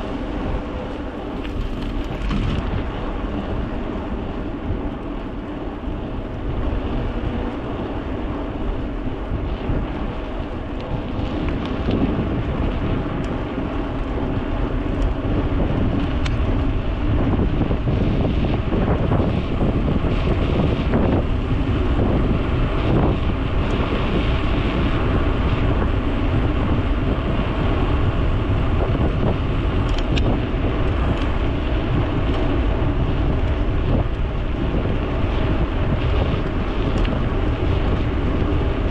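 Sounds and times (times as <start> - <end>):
wind buffeting microphone: 0.0 - 38.9.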